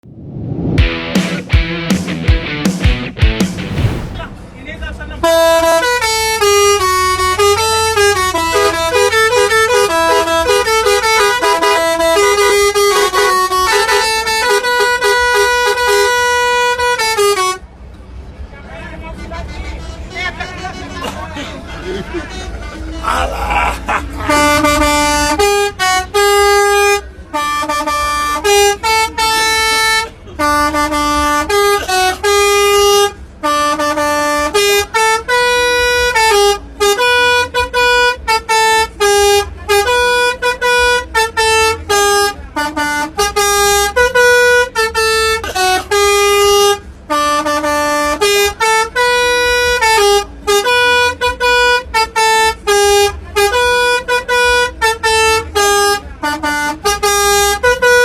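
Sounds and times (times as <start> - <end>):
low vehicle rumble: 0.0 - 13.6, 17.6 - 43.9
multi-tone air horn melody: 5.2 - 17.6, 24.2 - 58.0.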